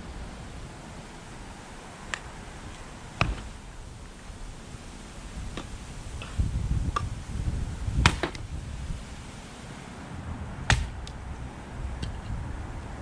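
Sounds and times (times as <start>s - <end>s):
wind buffeting microphone: 0.0s - 13.0s
sharp cracks: 10.7s - 11.2s.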